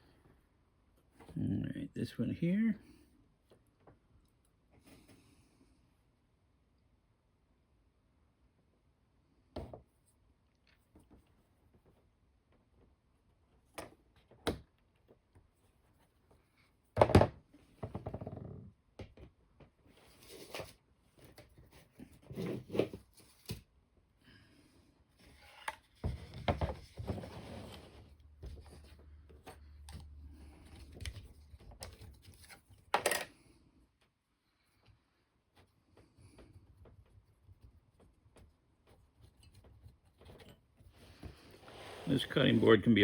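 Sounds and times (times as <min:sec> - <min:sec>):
scraping and rustling: 0:25.2 - 0:32.9.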